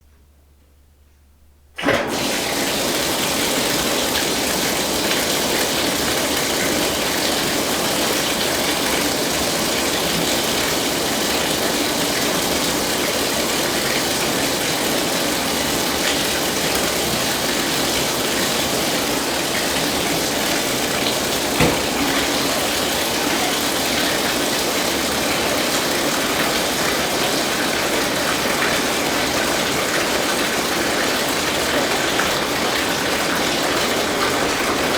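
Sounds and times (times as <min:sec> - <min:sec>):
tap water gushing into bathtub: 0:01.8 - 0:34.9
brief knock: 0:21.6 - 0:22.2.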